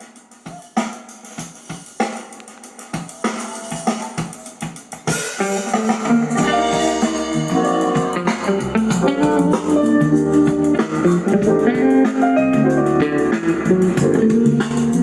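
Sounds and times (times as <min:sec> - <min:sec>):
guitar melody through amplifier: 0:05.4 - 0:15.0
bass line: 0:06.3 - 0:15.0.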